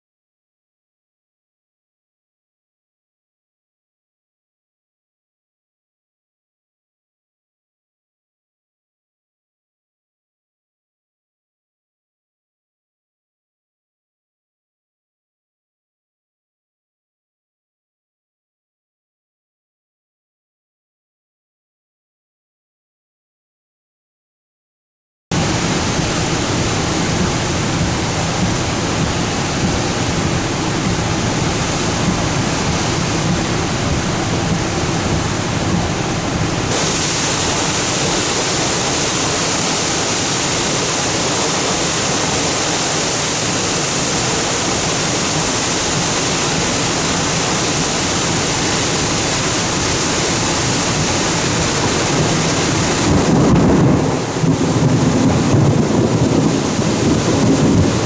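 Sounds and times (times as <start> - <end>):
rain hissing: 25.3 - 58.0
thunder rumble: 25.3 - 58.0
wind: 25.3 - 58.0.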